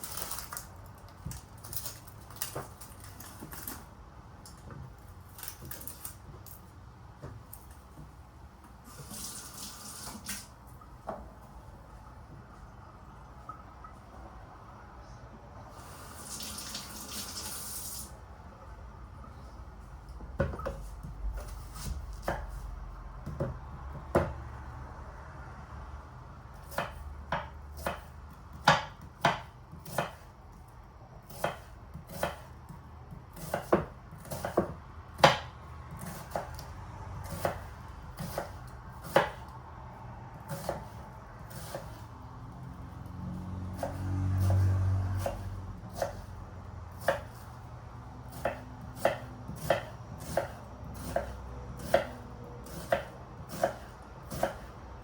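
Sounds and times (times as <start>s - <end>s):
knife chopping on cutting board: 20.4s - 22.6s, 23.2s - 24.4s, 26.6s - 30.3s, 31.3s - 36.6s, 37.2s - 39.5s, 40.5s - 42.1s, 43.8s - 46.3s, 47.0s - 47.5s, 48.3s - 54.8s.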